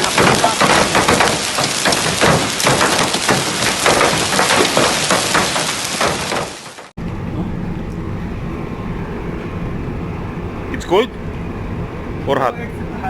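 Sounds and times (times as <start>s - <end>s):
hail falling heavily: 0.0s - 6.9s
steady low hum: 7.0s - 13.0s.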